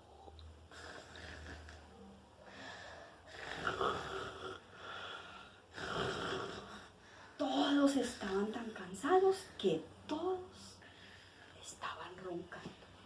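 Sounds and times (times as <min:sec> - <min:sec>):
person imitating snoring: 0:03.3 - 0:05.0, 0:05.7 - 0:06.9.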